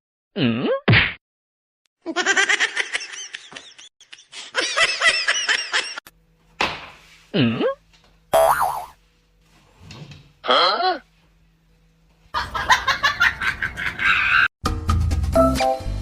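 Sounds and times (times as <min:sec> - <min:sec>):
person laughing: 0:02.1 - 0:06.1, 0:12.4 - 0:14.5.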